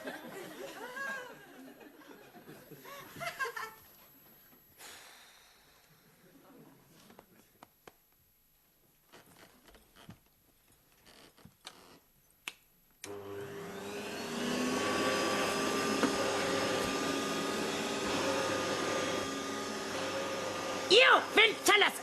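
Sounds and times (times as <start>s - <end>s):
vacuum cleaner running: 13.1s - 22.0s.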